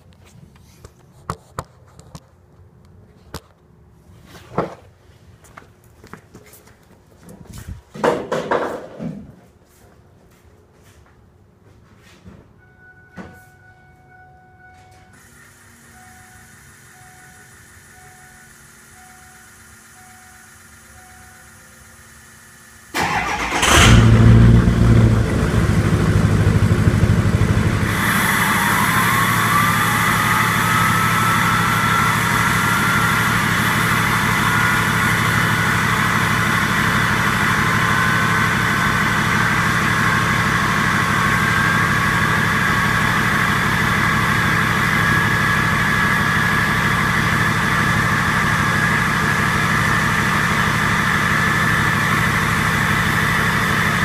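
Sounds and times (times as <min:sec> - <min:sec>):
diesel truck engine idling: 0:22.9 - 0:54.0
turbo whistling: 0:27.6 - 0:50.3.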